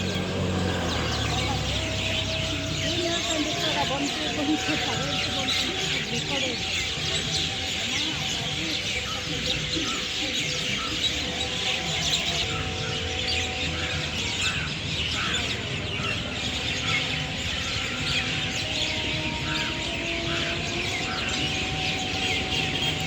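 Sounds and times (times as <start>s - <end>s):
flock of birds chirping: 0.0s - 23.0s.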